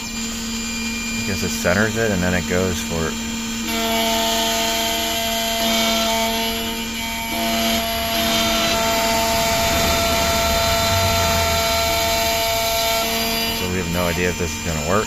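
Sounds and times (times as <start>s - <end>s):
key cutting machine motor whine: 0.0s - 15.0s
steady machine tones: 4.6s - 14.6s.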